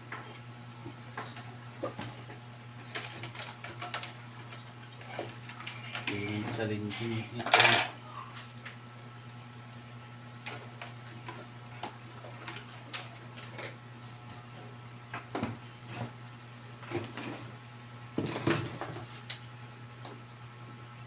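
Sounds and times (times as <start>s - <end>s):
clatter on workbench: 5.0s - 8.0s.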